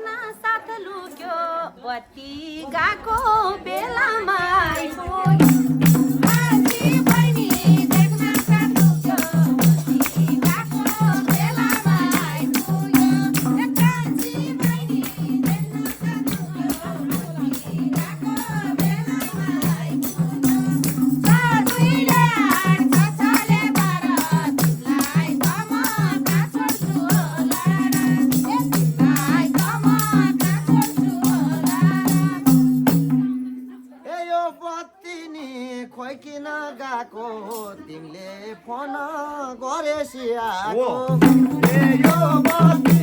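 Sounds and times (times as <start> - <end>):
rattling percussion: 4.7 - 33.7, 41.1 - 43.0
fast drum beat: 5.1 - 33.3, 41.1 - 43.0.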